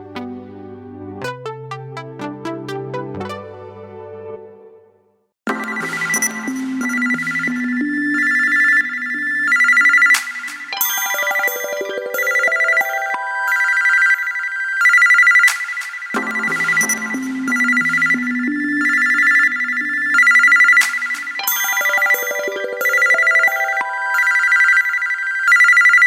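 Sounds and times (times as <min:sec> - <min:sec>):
synthesized ringtone tune: 0:05.5 - 0:26.0.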